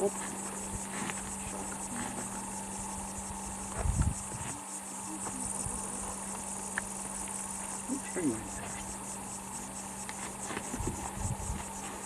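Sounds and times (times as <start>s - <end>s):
insects chirping: 0.0s - 12.0s.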